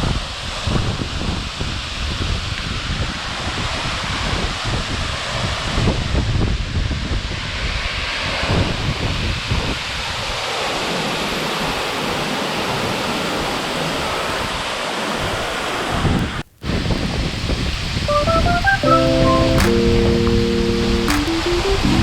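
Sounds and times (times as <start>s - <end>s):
wind buffeting microphone: 0.0s - 10.3s, 15.2s - 21.8s
waterfall rushing: 18.1s - 22.0s.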